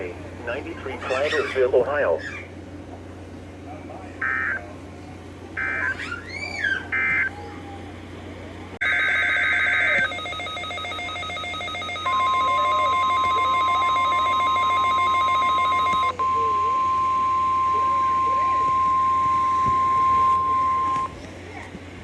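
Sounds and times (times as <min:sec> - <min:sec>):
single-pitch warning alarm tone: 0:08.8 - 0:21.2.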